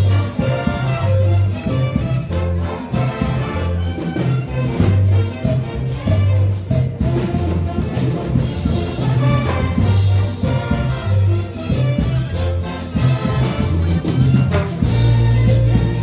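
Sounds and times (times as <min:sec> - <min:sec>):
band playing latin dance tune: 0:00.0 - 0:16.0
brass: 0:00.0 - 0:16.0
low bass line: 0:00.0 - 0:16.0
percussion: 0:00.0 - 0:16.0.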